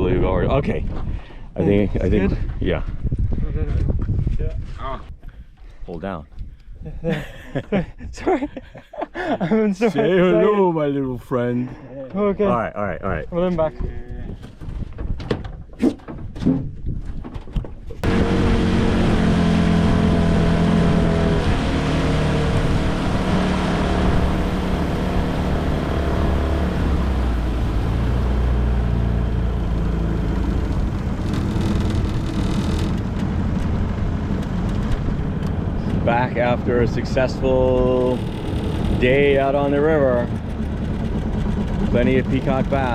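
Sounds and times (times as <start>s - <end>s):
wind and water rushing: 18.0s - 28.7s
outboard motor running: 18.0s - 42.9s.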